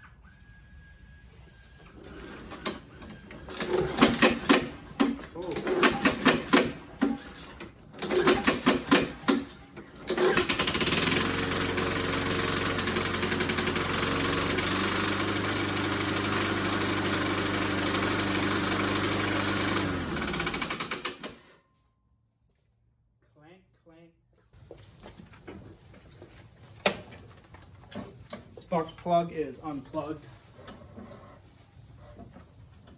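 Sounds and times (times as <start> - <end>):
lawn mower engine running: 2.0 - 21.5
engine sputtering on pull-start: 2.2 - 21.5.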